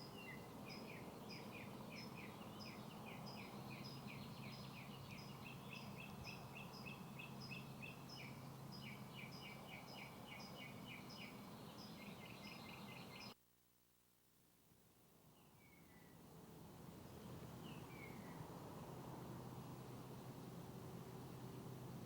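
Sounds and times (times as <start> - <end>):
birds chirping: 0.0 - 13.4, 17.1 - 18.5.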